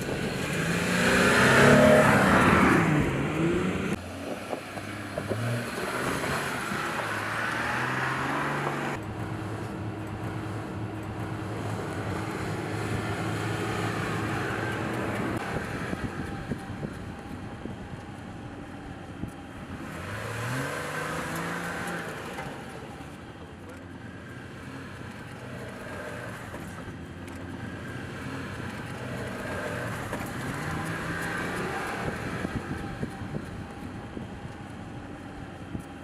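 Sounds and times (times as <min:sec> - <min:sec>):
wind noise: 0:00.0 - 0:21.6, 0:29.4 - 0:36.0
pickup engine humming: 0:00.0 - 0:36.0.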